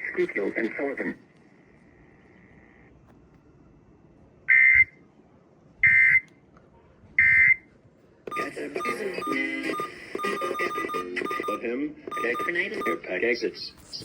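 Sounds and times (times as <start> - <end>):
digital data tone bursts: 8.3 - 13.0
busy mix of tones: 8.3 - 14.0.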